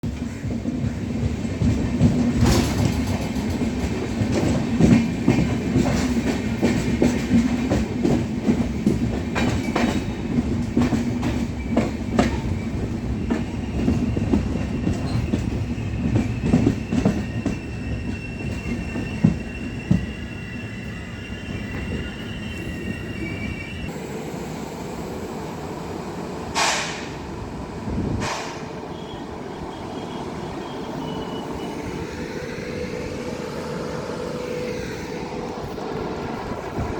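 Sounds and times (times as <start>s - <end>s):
train wheels clattering: 0.1s - 20.3s, 26.5s - 27.3s, 28.2s - 29.1s
wheel squeal: 13.4s - 23.9s.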